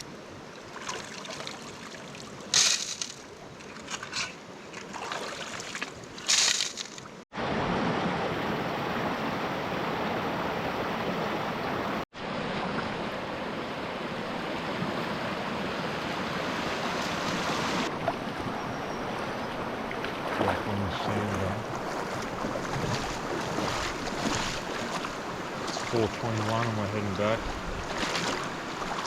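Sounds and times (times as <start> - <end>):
river water rushing over rocks: 20.2 - 29.0.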